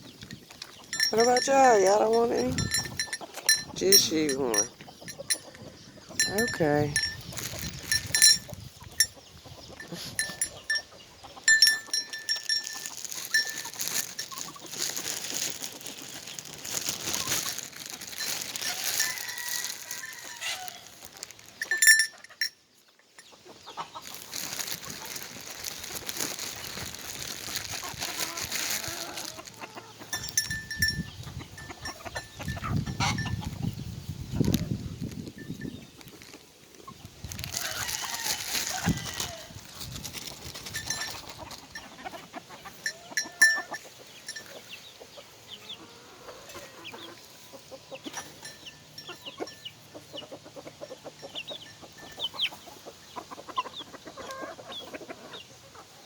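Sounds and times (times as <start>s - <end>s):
chickens clucking: 0.0s - 56.0s
goats: 0.1s - 22.6s, 23.2s - 33.6s, 36.1s - 56.0s
small bell clinking: 0.9s - 5.6s, 6.2s - 9.1s, 9.8s - 10.9s, 11.5s - 14.5s, 21.6s - 22.6s, 30.1s - 33.4s, 42.8s - 44.6s.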